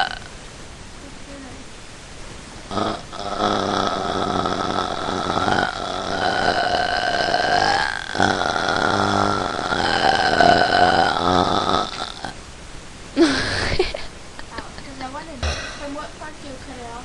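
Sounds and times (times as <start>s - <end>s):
long burp: 0.0s - 0.3s, 2.7s - 12.4s.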